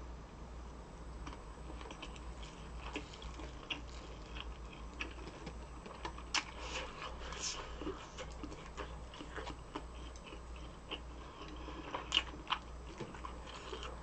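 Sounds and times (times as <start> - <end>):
mouth chewing food: 1.2 - 14.0.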